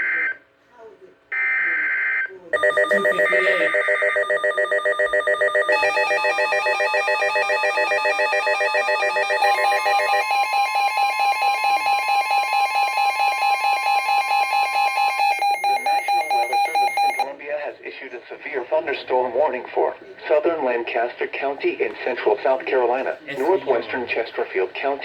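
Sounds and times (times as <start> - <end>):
electronic alert beeping: 2.6 - 17.3.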